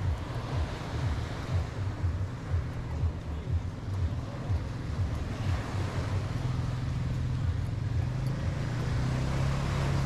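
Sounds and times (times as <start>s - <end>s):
outdoor background hiss: 0.0s - 10.0s.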